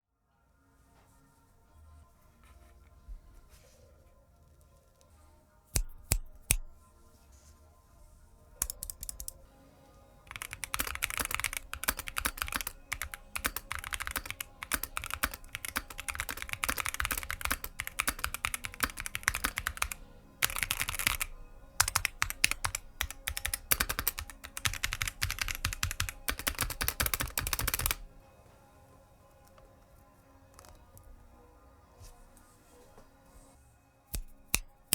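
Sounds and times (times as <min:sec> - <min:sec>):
fast mechanical keyboard typing: 0:08.6 - 0:09.4, 0:10.3 - 0:28.1.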